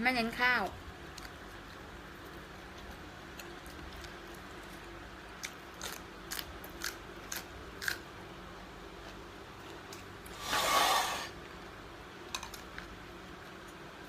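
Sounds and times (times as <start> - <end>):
faint background hum: 0.0 - 14.0
crunchy chewing of raw vegetables: 1.0 - 11.4.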